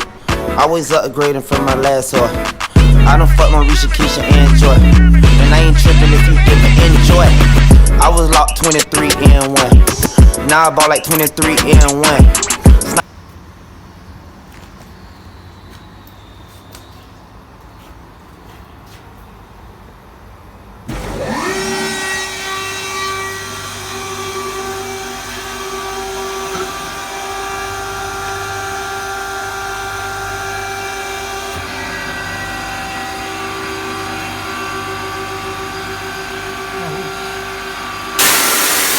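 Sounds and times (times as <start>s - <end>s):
power tool motor whining: 20.9s - 22.7s, 23.4s - 38.9s.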